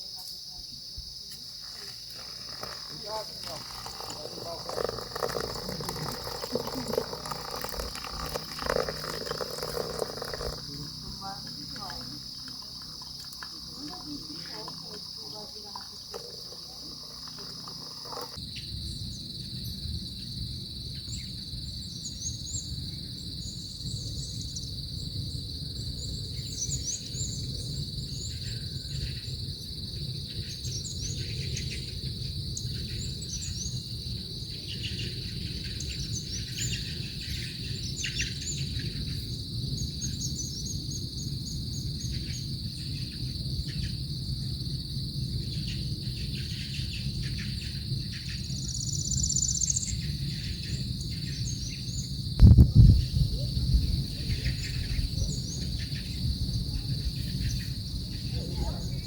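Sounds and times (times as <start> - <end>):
insects trilling: 0.0 - 59.0
bird chirps: 46.4 - 52.1.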